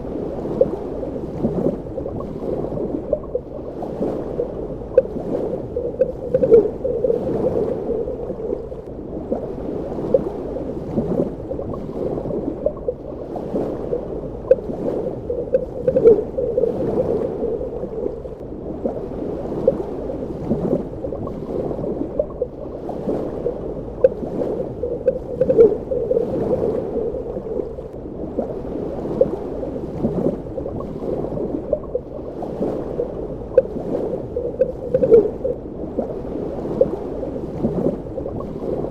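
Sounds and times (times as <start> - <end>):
muffled underwater sound: 0.0 - 38.9
bubbling gurgling pops: 4.4 - 8.9, 13.8 - 18.4, 23.9 - 27.8, 33.5 - 35.6.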